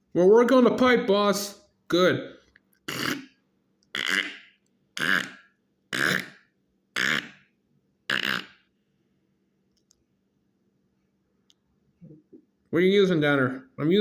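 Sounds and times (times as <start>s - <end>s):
person making mouth sound effects: 2.8s - 7.5s, 8.1s - 8.6s.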